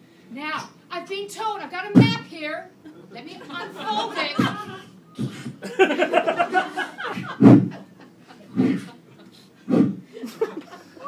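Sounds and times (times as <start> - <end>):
sharp mouth-made bursts: 9.7 - 10.1
voiced mouth rustling: 9.7 - 10.1.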